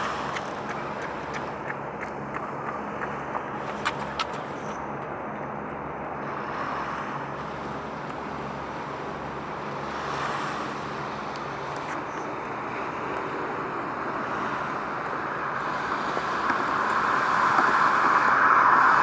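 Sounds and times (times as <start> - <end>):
wind buffeting microphone: 11.7 - 19.0.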